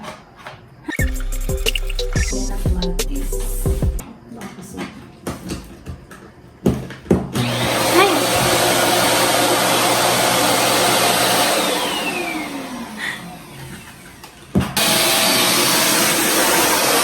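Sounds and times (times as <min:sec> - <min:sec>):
handheld vacuum cleaner whirring: 0:07.3 - 0:17.0.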